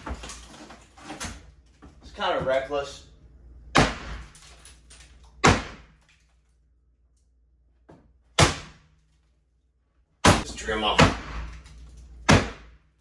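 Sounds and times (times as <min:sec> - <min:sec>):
sledgehammer smashing wood: 0:05.4 - 0:06.0, 0:08.4 - 0:08.8, 0:12.2 - 0:12.7.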